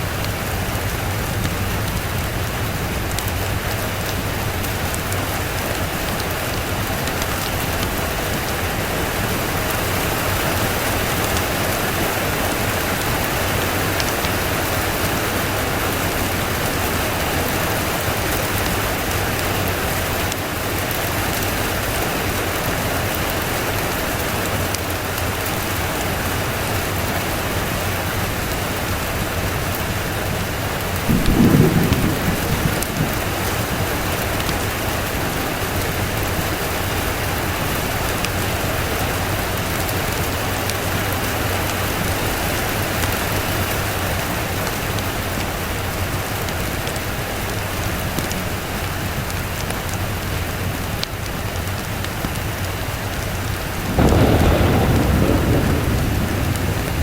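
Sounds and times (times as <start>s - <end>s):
steady rain: 0.0s - 57.0s
low rumble of thunder: 29.6s - 43.6s, 53.8s - 57.0s.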